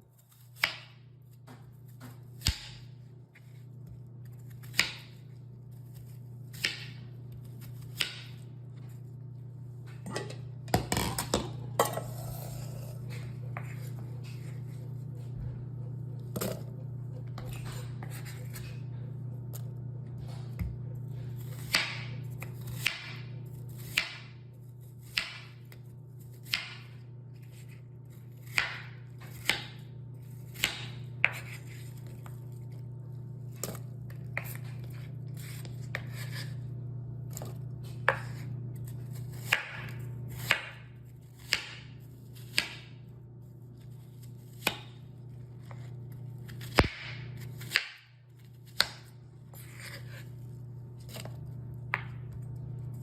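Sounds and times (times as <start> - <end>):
steady low hum: 0.0 - 53.0
knife chopping on cutting board: 6.0 - 8.5, 10.1 - 18.8, 20.2 - 24.3, 25.0 - 25.6, 26.4 - 27.7, 28.4 - 29.8, 30.4 - 32.1, 33.6 - 36.5, 37.3 - 43.0, 44.5 - 45.0, 46.5 - 50.2.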